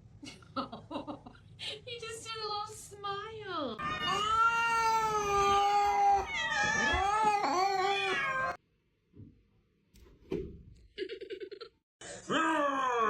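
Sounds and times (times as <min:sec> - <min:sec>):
cat yowling: 0:03.8 - 0:08.6.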